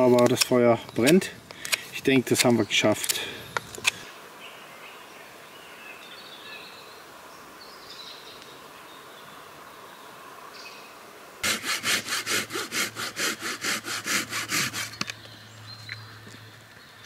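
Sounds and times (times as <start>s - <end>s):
hand saw cutting wood: 11.4s - 15.1s.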